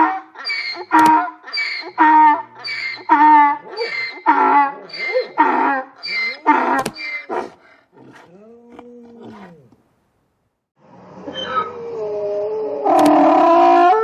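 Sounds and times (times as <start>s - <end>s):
animal calling: 0.0s - 9.8s.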